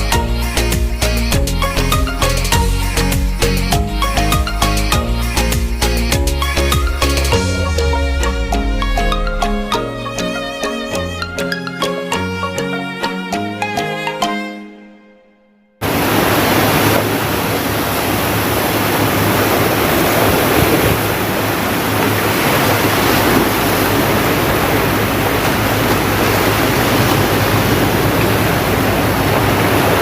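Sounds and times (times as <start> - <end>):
sea surf: 0.0 - 14.3, 15.8 - 30.0
wind: 15.8 - 30.0.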